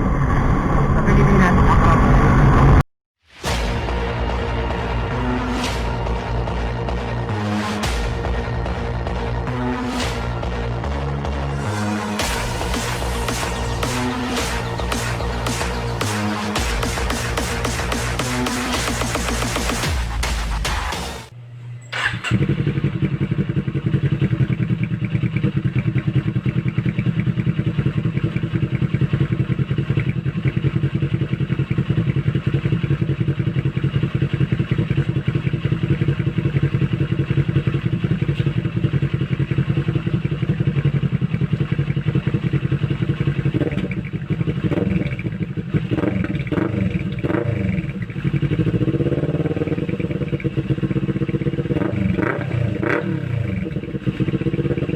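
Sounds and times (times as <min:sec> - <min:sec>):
motorcycle engine idling: 0:22.0 - 0:54.9.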